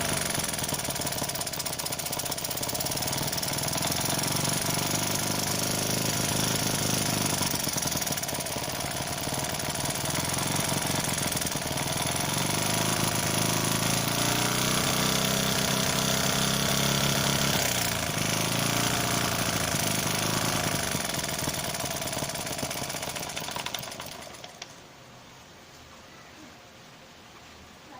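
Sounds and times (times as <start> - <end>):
small engine chattering: 0.0 - 24.8.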